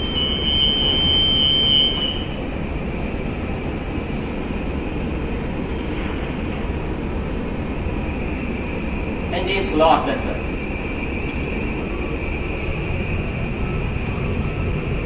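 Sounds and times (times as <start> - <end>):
high electronic alarm beep: 0.0 - 2.4
low rumble and hiss: 0.0 - 15.0.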